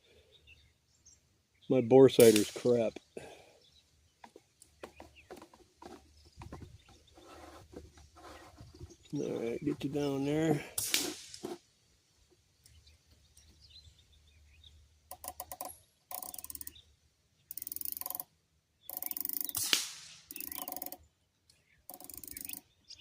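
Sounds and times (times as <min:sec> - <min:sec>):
scope turret clicking: 0:15.1 - 0:16.7, 0:17.5 - 0:18.3, 0:18.9 - 0:21.0, 0:21.9 - 0:22.6
faint bird chirps: 0:18.8 - 0:19.6, 0:20.3 - 0:23.0.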